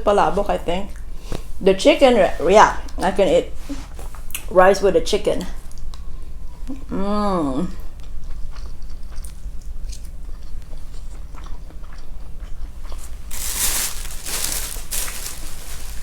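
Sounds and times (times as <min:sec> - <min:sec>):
person chewing food: 0:07.8 - 0:16.0.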